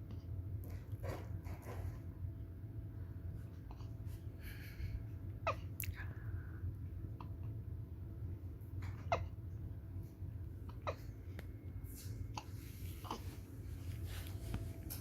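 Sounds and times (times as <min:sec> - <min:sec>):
low background rumble: 0:00.0 - 0:15.0
baby hiccupping: 0:08.9 - 0:09.4, 0:10.7 - 0:11.2.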